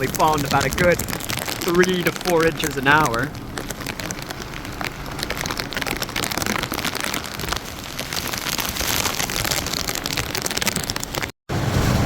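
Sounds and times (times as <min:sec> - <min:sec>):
heavy rain pouring: 0:00.0 - 0:12.0
wind gusts: 0:11.5 - 0:12.0.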